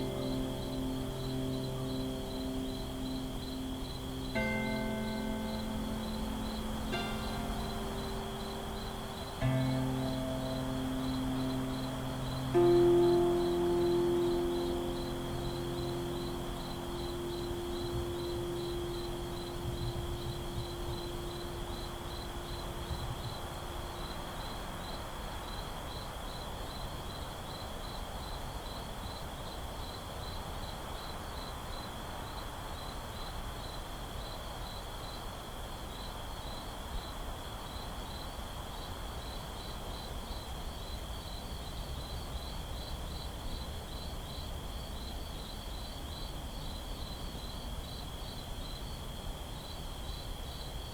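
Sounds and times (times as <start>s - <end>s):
low harp notes: 0.0s - 24.8s
crickets chirping: 0.0s - 50.9s
soft background hiss: 0.0s - 50.9s.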